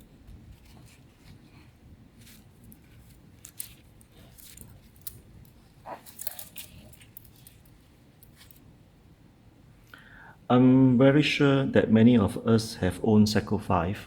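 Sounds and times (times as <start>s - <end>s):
packaging rustling: 0.0s - 8.6s.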